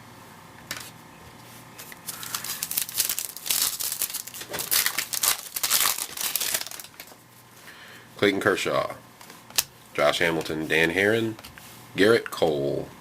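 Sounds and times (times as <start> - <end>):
card pack wrapper tearing and crinkling: 1.8 - 7.2.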